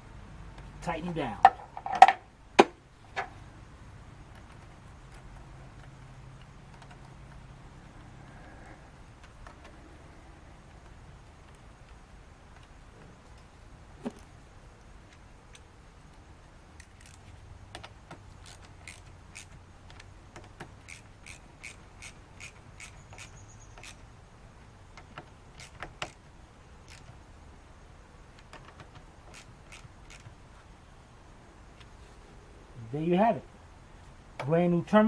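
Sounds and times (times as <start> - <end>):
wrench clicking on metal: 16.8 - 24.1, 25.1 - 27.2, 29.3 - 30.3.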